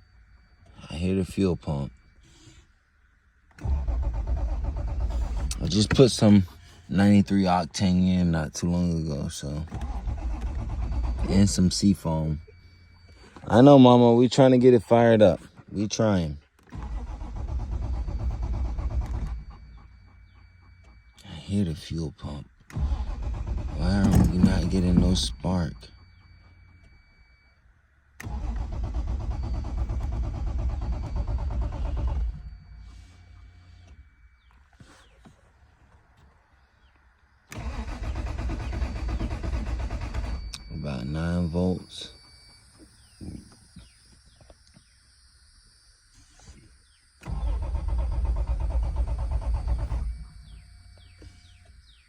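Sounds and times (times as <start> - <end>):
car engine cranking: 0.1 - 44.9, 46.1 - 52.0.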